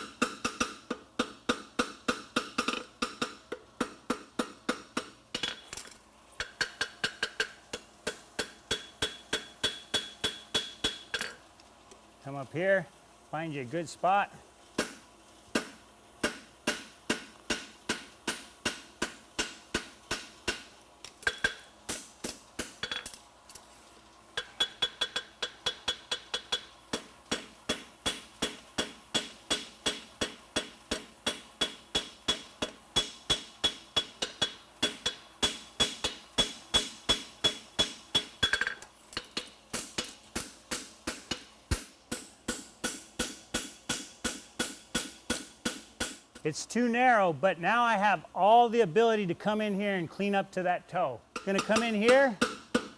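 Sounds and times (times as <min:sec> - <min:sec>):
hammer striking horseshoe on anvil: 0:00.1 - 0:05.6, 0:06.4 - 0:11.4, 0:15.6 - 0:23.2, 0:24.4 - 0:46.2, 0:51.4 - 0:52.9.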